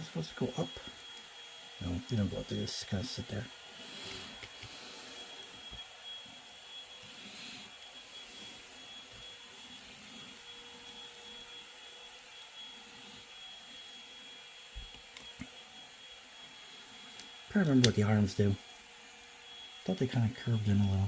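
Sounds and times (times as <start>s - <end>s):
background hum and hiss: 0.0s - 6.4s.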